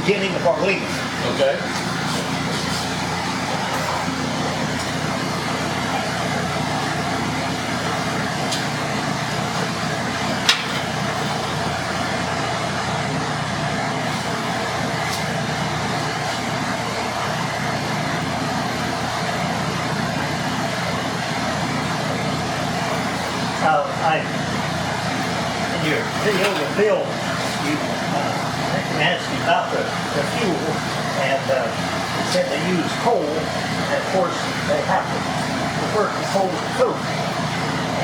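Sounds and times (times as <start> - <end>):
forge blower roaring: 0.0 - 38.0.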